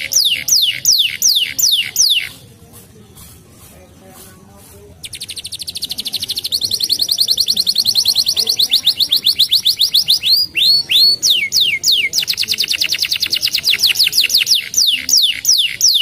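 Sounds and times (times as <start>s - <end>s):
canary singing: 0.0s - 2.6s, 4.2s - 16.0s.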